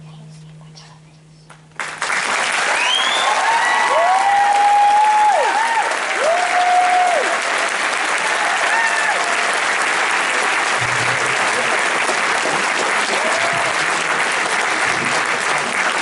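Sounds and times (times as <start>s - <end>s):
audience applauding and cheering: 1.8s - 16.0s
person whooping: 2.8s - 7.3s.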